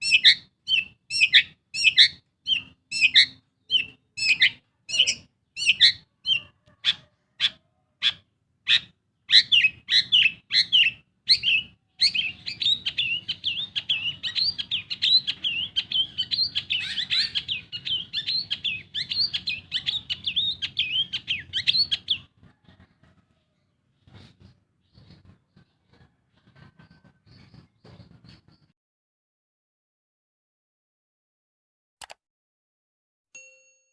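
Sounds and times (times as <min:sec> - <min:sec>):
bird singing sharp calls and chatter: 0:00.0 - 0:28.7.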